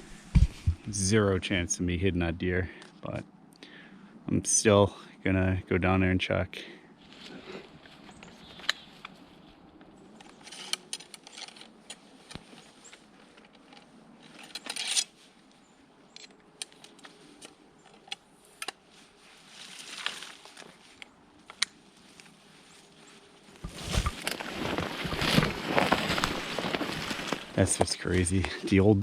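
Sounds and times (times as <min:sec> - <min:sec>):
footsteps through brush: 0:18.8 - 0:29.0.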